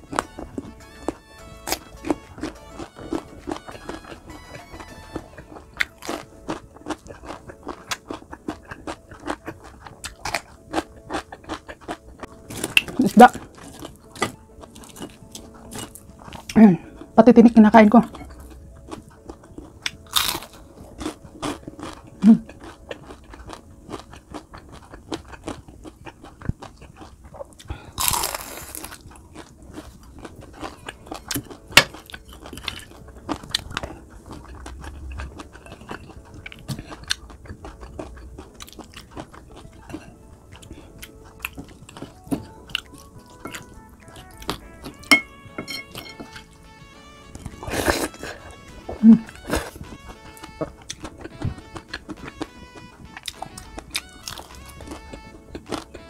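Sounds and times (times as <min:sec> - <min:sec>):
chewing crispy fried fish: 0:00.0 - 0:56.0
soft background music: 0:00.0 - 0:56.0.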